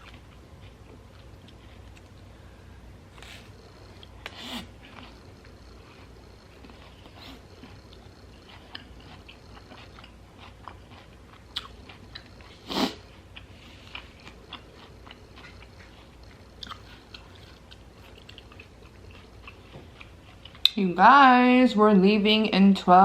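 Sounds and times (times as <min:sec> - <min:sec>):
close chewing and crunching: 0:00.0 - 0:02.2, 0:03.2 - 0:20.8.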